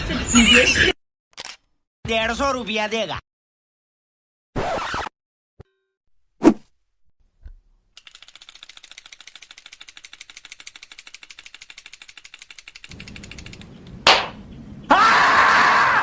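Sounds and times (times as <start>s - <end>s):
rapid even clicking: 8.0s - 14.4s
scream with falling pitch: 14.9s - 16.0s.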